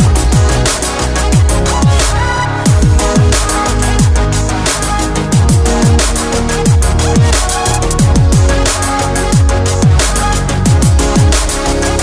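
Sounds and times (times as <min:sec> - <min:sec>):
electronic music with deep bass: 0:00.0 - 0:12.0.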